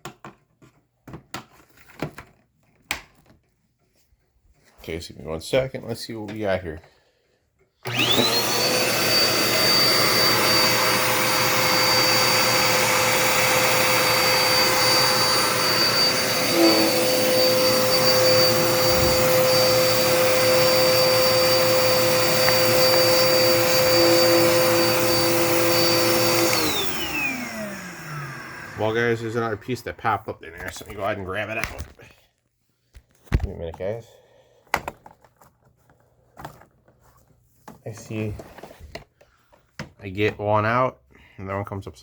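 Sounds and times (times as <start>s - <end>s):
vacuum cleaner whine: 7.8s - 29.9s
motor spinning down: 7.9s - 29.0s.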